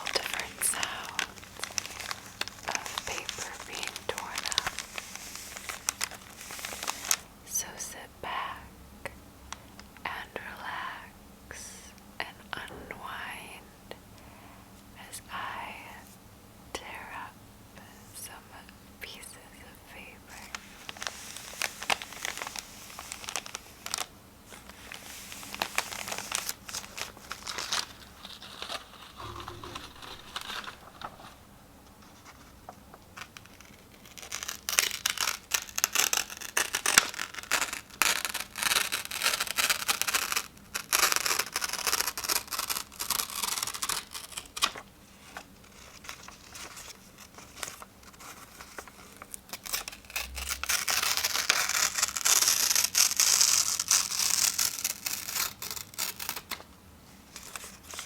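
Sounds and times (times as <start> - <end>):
paper tearing and crinkling: 0.0 - 7.2, 24.9 - 31.4, 45.6 - 56.6.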